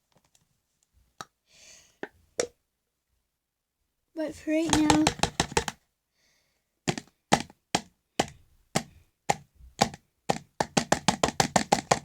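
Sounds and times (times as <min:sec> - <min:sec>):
sharp taps and knocks: 0:04.6 - 0:05.8, 0:06.9 - 0:12.0.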